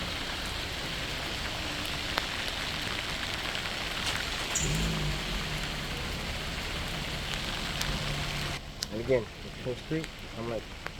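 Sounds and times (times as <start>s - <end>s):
close rain drops: 0.0s - 10.9s
rain pattering: 0.0s - 10.9s.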